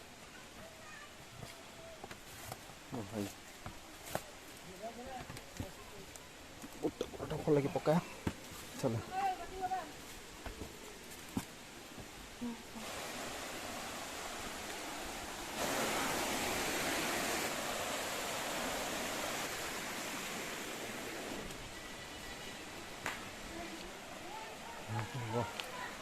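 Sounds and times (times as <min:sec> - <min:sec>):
waterfall rushing: 0:12.8 - 0:26.0.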